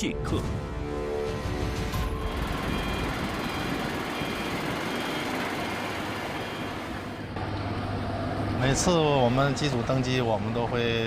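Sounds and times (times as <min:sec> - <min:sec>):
faint high whining tones: 0:01.7 - 0:09.8.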